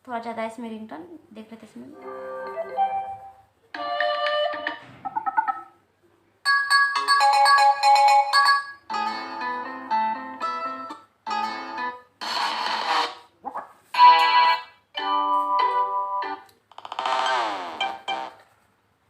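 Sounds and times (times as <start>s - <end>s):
phone ringtone melodies: 6.5s - 12.0s.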